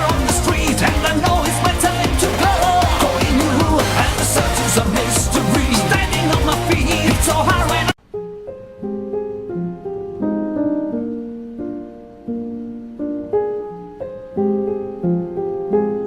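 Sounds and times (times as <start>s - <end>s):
gentle piano melody: 8.0s - 16.0s.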